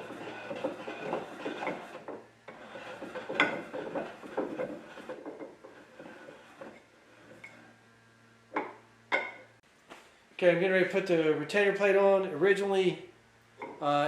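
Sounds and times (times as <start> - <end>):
wooden knocks and clatter: 0.0 - 6.8
wood sliding and rubbing: 0.0 - 7.8.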